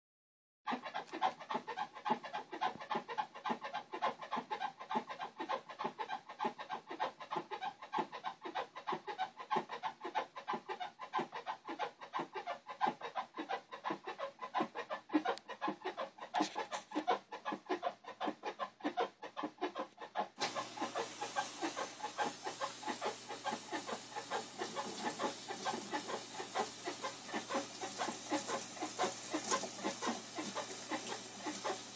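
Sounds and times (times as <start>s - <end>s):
steady hiss: 20.4s - 31.9s.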